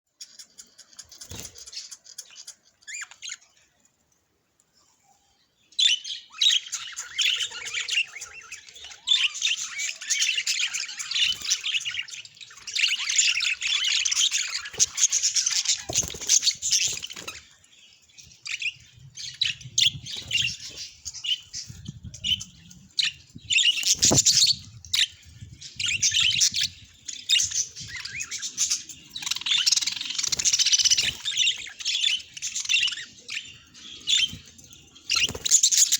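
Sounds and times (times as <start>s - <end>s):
budgerigars chattering: 25.9s - 34.5s.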